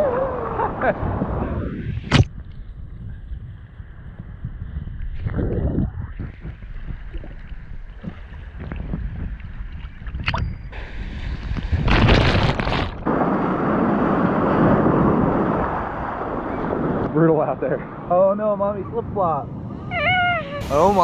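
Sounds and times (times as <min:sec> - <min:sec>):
wind buffeting microphone: 0:00.0 - 0:12.2
ocean surf: 0:20.6 - 0:21.0
wave surging: 0:20.6 - 0:21.0.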